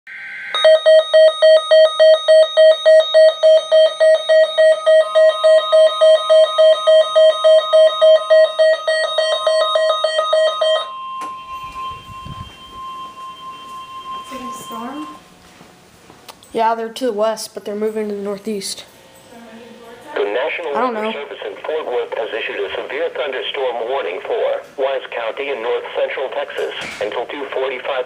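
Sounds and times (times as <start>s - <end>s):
alarm beeping: 0.1s - 15.4s
steady alarm tone: 0.1s - 15.6s.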